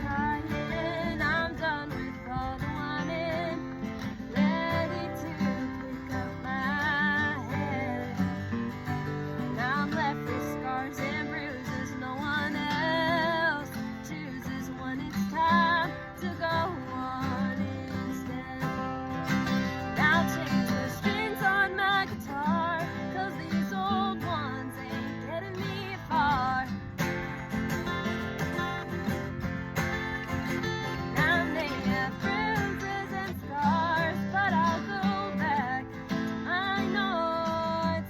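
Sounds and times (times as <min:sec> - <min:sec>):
person singing with vibrato: 0:00.0 - 0:27.2, 0:30.0 - 0:38.0
acoustic guitar strumming: 0:00.0 - 0:38.0.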